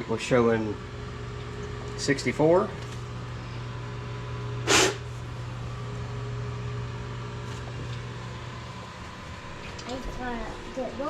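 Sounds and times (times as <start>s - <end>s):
blower fans humming: 0.0s - 11.0s
short hiss: 4.6s - 5.0s.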